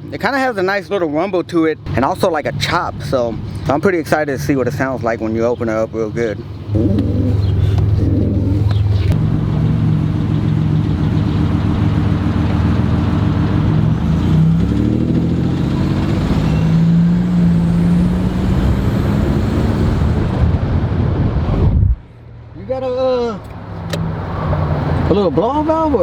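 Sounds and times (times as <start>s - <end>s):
car engine rumble while driving: 1.8s - 22.3s.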